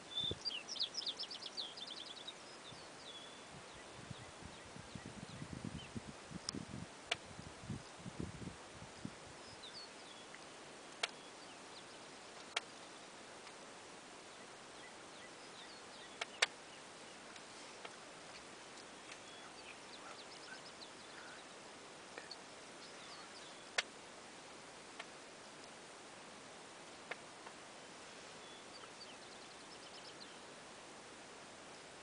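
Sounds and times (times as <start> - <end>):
small songbirds chirping: 0.0 - 8.3, 8.9 - 32.0
steady hiss: 0.0 - 32.0
sharp clicks: 10.3 - 11.2, 16.2 - 16.6.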